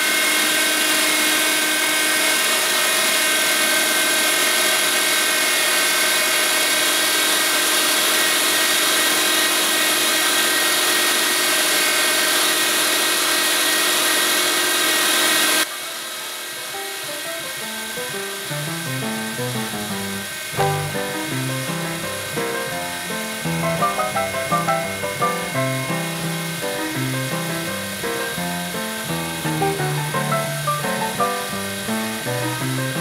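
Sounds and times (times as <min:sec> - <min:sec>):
electric meat grinder whine: 0:00.0 - 0:33.0
music: 0:16.7 - 0:33.0.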